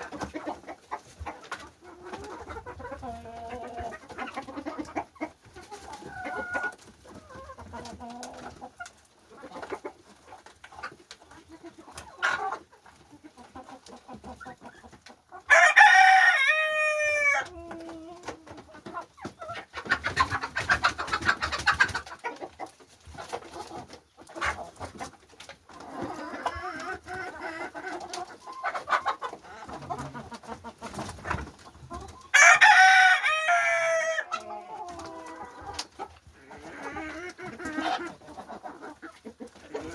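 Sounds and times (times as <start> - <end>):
chickens clucking: 0.0 - 39.9
rooster crowing: 15.5 - 17.4, 32.3 - 34.2.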